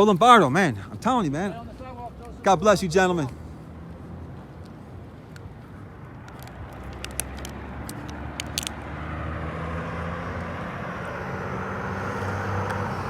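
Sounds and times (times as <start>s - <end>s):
low traffic rumble: 0.0s - 13.0s
motor vehicle approaching: 0.0s - 13.0s
short clicks: 6.2s - 8.8s.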